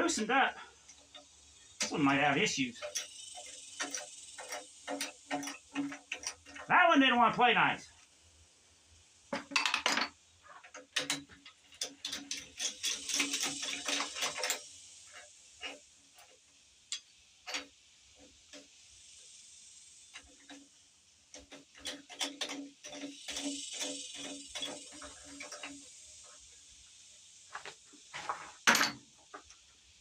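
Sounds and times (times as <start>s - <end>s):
socket ratchet clicking: 2.7s - 6.7s, 10.7s - 14.8s.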